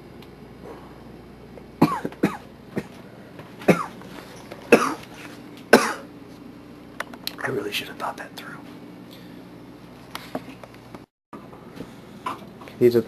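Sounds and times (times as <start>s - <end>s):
person coughing: 1.8s - 3.0s, 3.6s - 4.0s, 4.7s - 5.1s, 5.7s - 6.1s.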